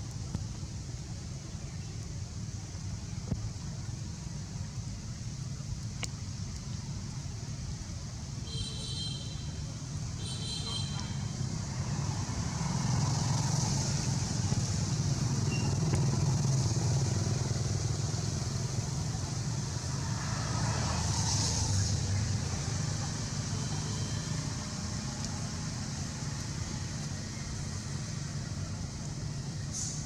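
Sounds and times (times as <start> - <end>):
steady hiss: 0.0 - 30.0
vehicle engine rumble: 9.3 - 30.0.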